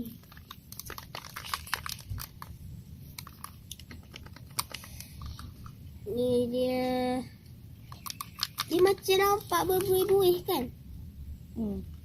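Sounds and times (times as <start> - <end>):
container clicks and crinkles: 0.0 - 5.8, 7.8 - 10.1.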